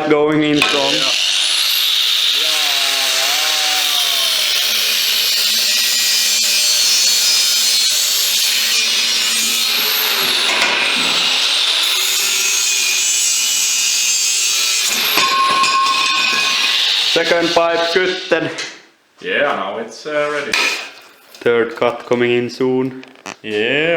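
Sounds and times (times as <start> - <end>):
power tool cutting steel pipe: 0.6 - 18.2.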